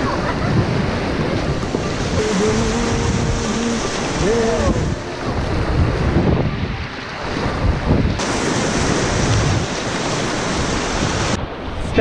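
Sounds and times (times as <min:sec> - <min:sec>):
rushing white water: 0:00.0 - 0:12.0
wind buffeting microphone: 0:00.0 - 0:12.0.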